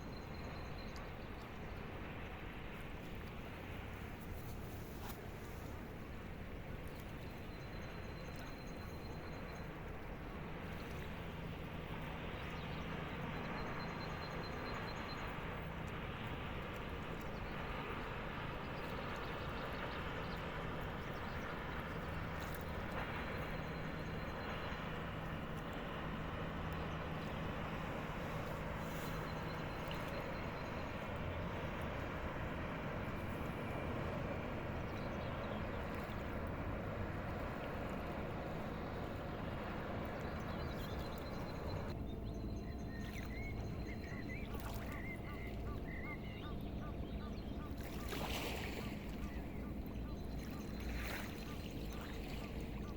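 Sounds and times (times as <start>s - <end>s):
ship engine drone: 9.0s - 52.9s.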